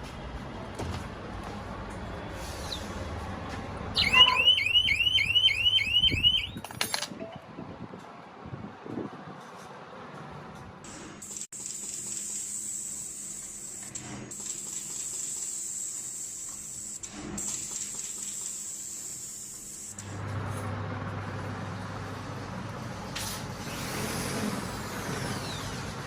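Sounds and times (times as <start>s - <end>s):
machine hiss: 11.2s - 20.0s.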